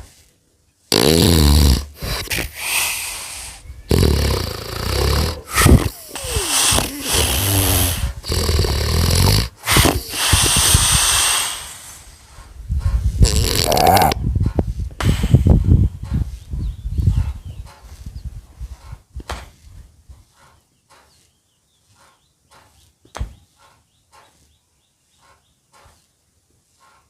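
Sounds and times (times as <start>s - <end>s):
loud snoring: 0.9s - 3.3s, 3.9s - 11.8s, 13.2s - 14.2s.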